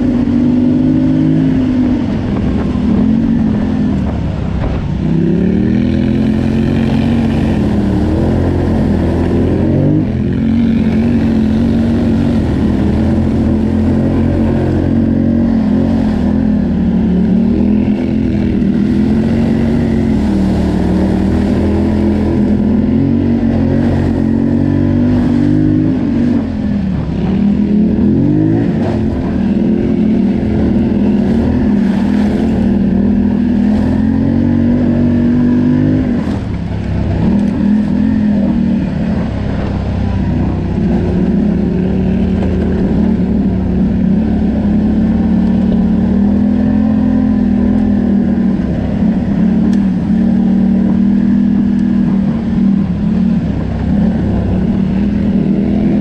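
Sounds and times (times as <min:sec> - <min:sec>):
atv engine revving: 0:00.0 - 0:56.0.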